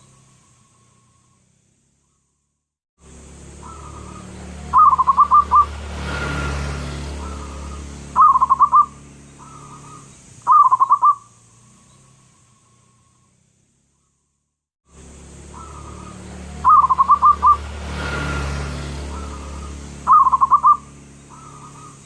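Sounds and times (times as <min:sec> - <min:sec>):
low hum: 0:03.0 - 0:10.5, 0:14.9 - 0:22.0
dove cooing: 0:03.6 - 0:05.7, 0:07.2 - 0:11.3, 0:19.1 - 0:22.0.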